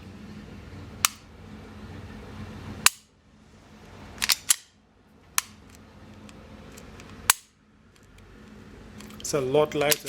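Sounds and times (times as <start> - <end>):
pistol action metallic clicks: 1.0 - 1.3, 2.8 - 3.1, 4.2 - 4.8, 5.4 - 8.3.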